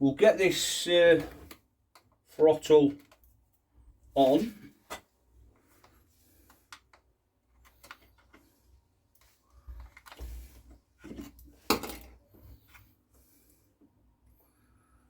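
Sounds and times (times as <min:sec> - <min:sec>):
clicks and knocks of small parts: 0:02.8 - 0:03.3, 0:05.8 - 0:08.5, 0:09.1 - 0:10.3.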